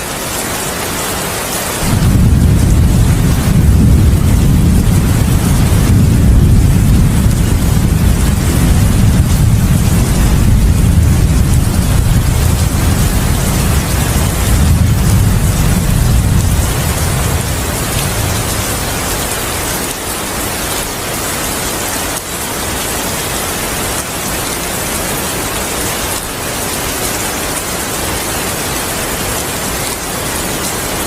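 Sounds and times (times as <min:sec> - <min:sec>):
heavy rain hissing: 0:00.0 - 0:31.0
low thunder rumble: 0:01.8 - 0:20.6.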